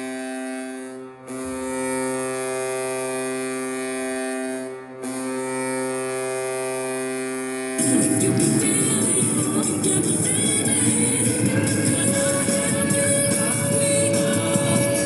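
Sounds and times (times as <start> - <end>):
goal horn blasts: 0.0 - 15.0
loud music: 5.9 - 15.0.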